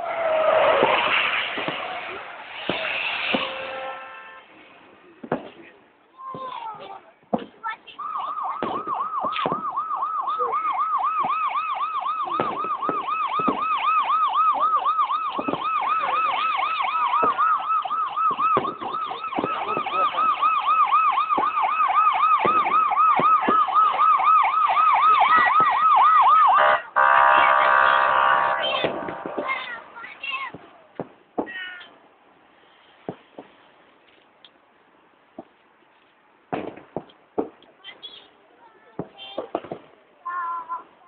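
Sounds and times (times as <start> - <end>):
siren yelping warble: 8.0 - 30.0.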